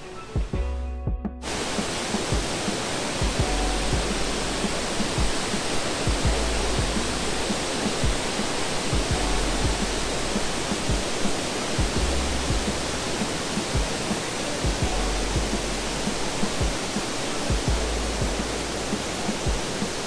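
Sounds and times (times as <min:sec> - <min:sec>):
low thumps and rumbles: 0:00.4 - 0:01.6, 0:03.2 - 0:05.5, 0:06.1 - 0:08.3, 0:09.0 - 0:11.2, 0:11.8 - 0:14.0, 0:14.7 - 0:16.9, 0:17.5 - 0:19.7
water rushing over a dam: 0:01.4 - 0:20.0.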